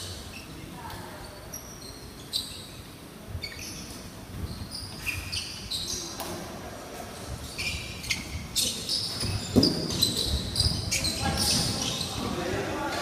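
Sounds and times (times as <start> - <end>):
shoes squeaking on court floor: 0.0 - 13.0
ball bouncing: 9.1 - 12.3.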